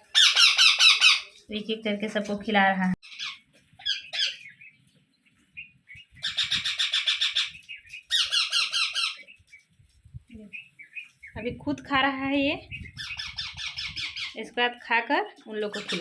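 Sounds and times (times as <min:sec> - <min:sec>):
parrot chicks begging calls: 0:00.0 - 0:01.5, 0:03.0 - 0:09.8, 0:10.4 - 0:11.6, 0:12.5 - 0:14.6, 0:15.6 - 0:16.0.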